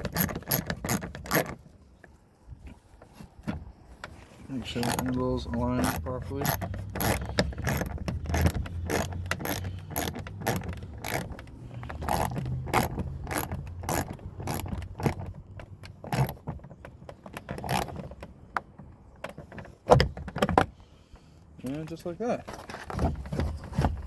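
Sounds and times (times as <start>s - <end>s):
ratchet wrench clicking: 0.0s - 1.5s, 4.8s - 5.2s, 5.8s - 15.2s, 15.8s - 16.4s, 17.6s - 17.9s.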